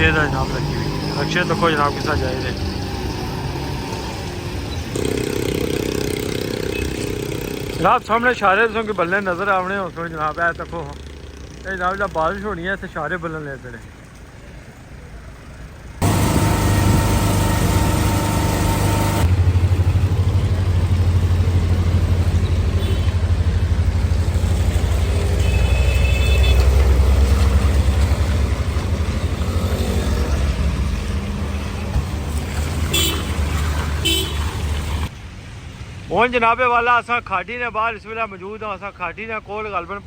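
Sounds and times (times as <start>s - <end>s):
vehicle engine droning: 14.7s - 35.1s
car horn toot: 16.0s - 19.3s, 22.8s - 23.2s, 32.9s - 33.4s, 34.0s - 34.4s.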